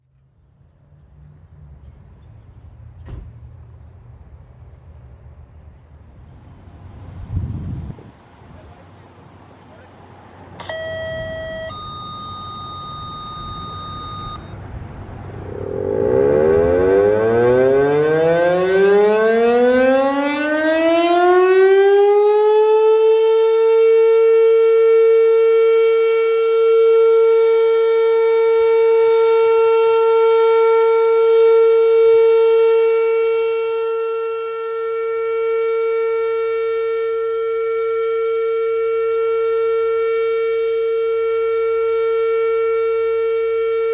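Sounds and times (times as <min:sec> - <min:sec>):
short electronic beeps: 0:10.6 - 0:14.6
warning siren wailing: 0:10.6 - 0:43.9.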